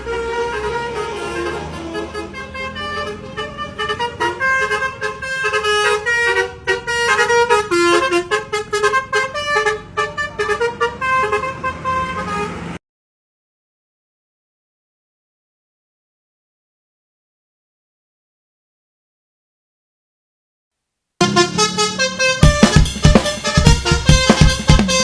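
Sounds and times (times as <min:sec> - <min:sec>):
multi-tone bus horn melody: 0:00.0 - 0:12.8, 0:21.2 - 0:25.0
drum kit playing: 0:21.2 - 0:25.0.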